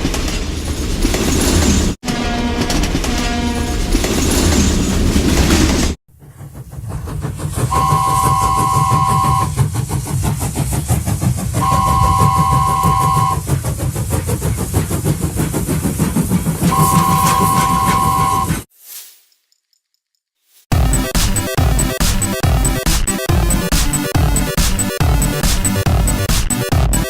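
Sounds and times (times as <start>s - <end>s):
train rumbling with wheel clicks: 0.0s - 18.7s, 20.8s - 27.0s
two-note train whistle: 7.7s - 9.5s, 11.6s - 13.4s, 16.7s - 18.5s.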